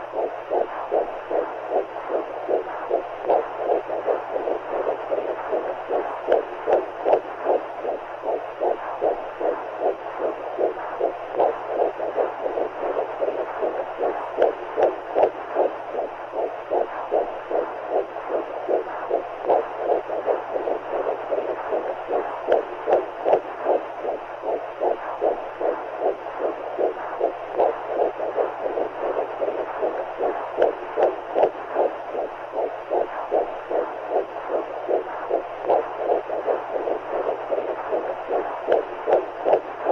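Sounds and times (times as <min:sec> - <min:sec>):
low hum: 0:00.0 - 0:39.9
muffled heartbeat: 0:00.0 - 0:39.9.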